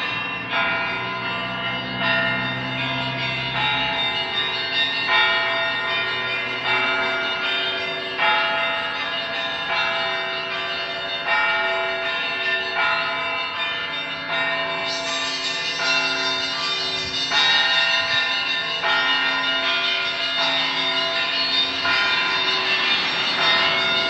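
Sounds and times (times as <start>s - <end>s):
monastery bells pealing: 0.0s - 24.0s
deep bell hum: 9.4s - 24.0s.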